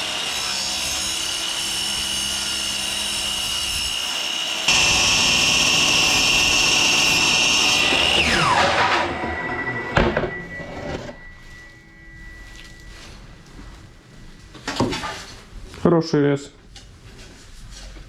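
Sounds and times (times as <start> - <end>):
saw blade cutting floorboard: 0.0 - 11.3
electric mitre saw whining: 0.0 - 12.8.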